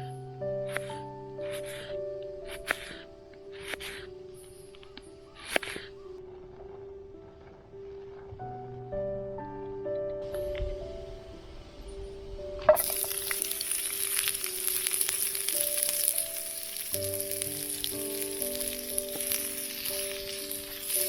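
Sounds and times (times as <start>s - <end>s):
background music: 0.0s - 21.0s
food sizzling in a hot pan: 12.7s - 21.0s.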